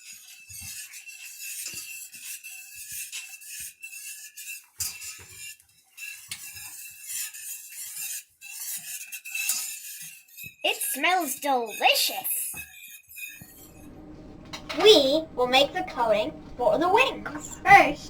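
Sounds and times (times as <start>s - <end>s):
whisk scraping and clinking pan: 0.0s - 13.8s.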